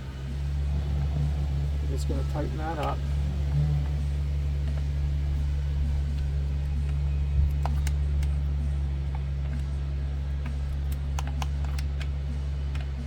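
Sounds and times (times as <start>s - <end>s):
low mechanical hum: 0.0s - 13.0s
wrench clicking: 10.8s - 12.9s.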